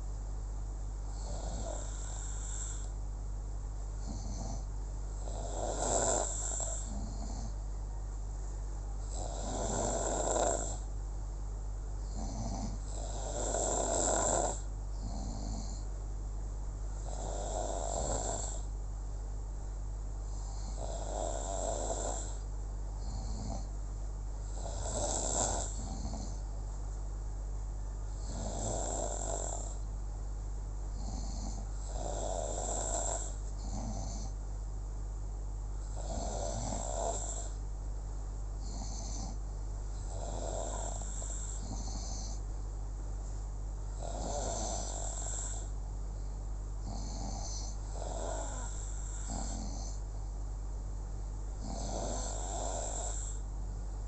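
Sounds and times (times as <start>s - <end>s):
steady low hum: 0.0s - 54.0s
soft breathing: 1.0s - 3.0s, 20.2s - 23.8s, 38.6s - 42.6s, 43.2s - 50.5s
person snoring: 1.1s - 2.9s, 4.0s - 7.6s, 9.0s - 10.9s, 12.0s - 15.9s, 17.0s - 18.7s, 20.3s - 22.4s, 23.0s - 23.7s, 24.5s - 26.4s, 28.1s - 29.9s, 30.9s - 34.4s, 35.9s - 37.6s, 38.6s - 39.4s, 40.0s - 42.4s, 43.9s - 45.8s, 46.8s - 50.0s, 51.6s - 53.4s.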